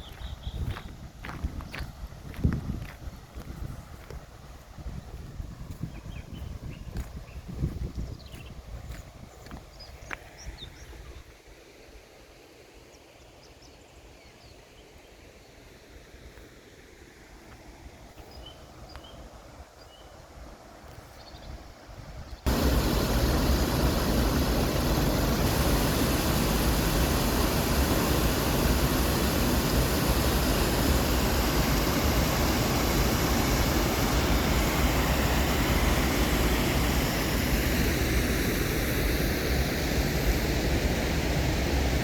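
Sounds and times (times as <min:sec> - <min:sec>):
stream water rushing: 0:22.5 - 0:42.0.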